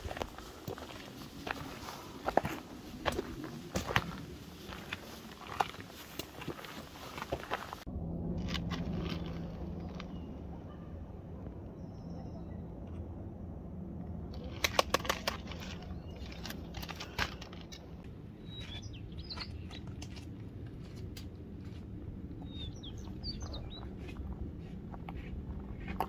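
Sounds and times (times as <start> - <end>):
low rumble: 6.5 - 19.2.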